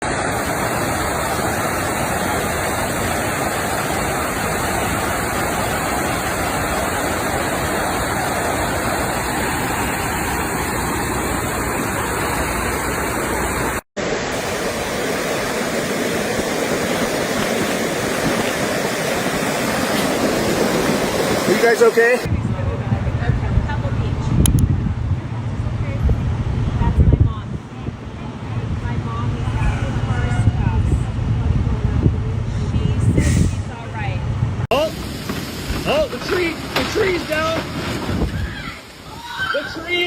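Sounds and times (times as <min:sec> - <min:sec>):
floodwater rushing: 0:00.0 - 0:22.3, 0:34.7 - 0:40.0.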